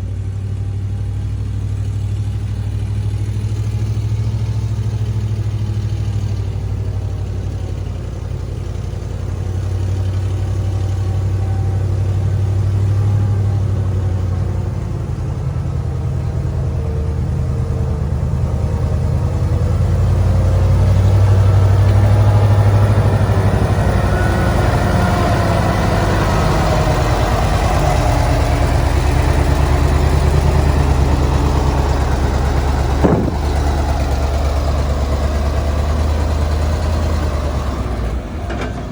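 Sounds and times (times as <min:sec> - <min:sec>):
diesel engine of heavy machinery: 0:00.0 - 0:38.9
short knock: 0:33.0 - 0:33.8.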